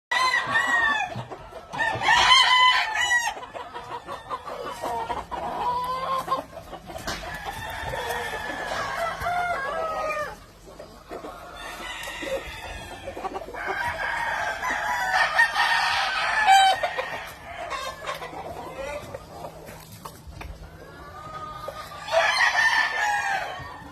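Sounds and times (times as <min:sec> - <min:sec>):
chickens clucking: 0:00.1 - 0:23.9
roosters crowing: 0:00.1 - 0:23.9.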